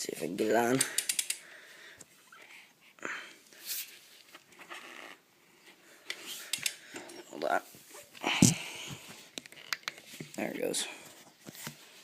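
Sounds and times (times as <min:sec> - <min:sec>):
clicks of bike light clip: 0:00.8 - 0:01.4.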